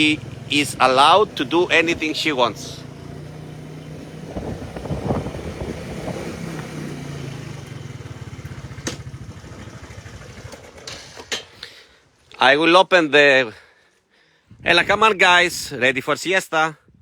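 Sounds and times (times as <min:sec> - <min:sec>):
vehicle engine running: 0:00.0 - 0:11.4.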